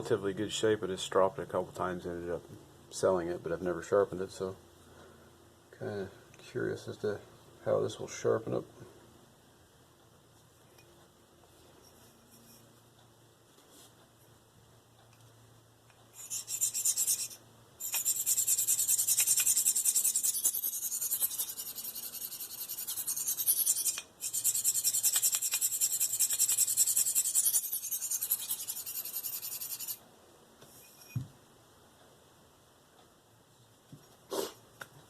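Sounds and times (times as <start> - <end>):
knife scraping on sharpening stone: 16.2 - 30.0.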